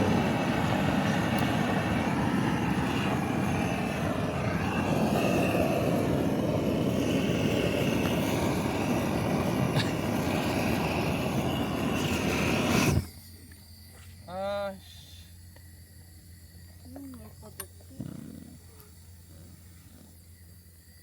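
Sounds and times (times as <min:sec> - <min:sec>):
campfire crackling: 0:00.0 - 0:13.7.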